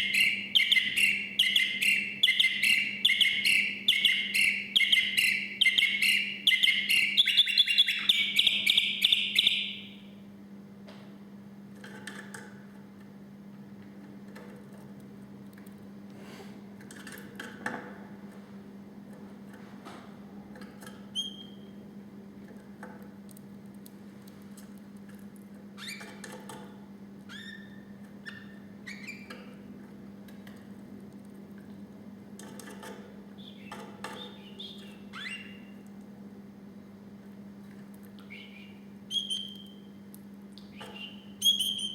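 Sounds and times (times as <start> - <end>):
canary chirping: 0.0 - 10.1, 21.1 - 21.7, 27.3 - 29.4, 33.4 - 35.8, 38.3 - 39.9, 40.8 - 41.9
steady low hum: 26.8 - 41.9.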